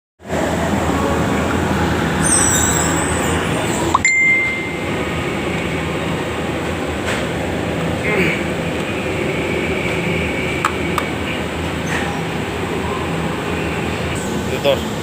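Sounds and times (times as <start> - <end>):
machine hum: 0.3 - 15.0.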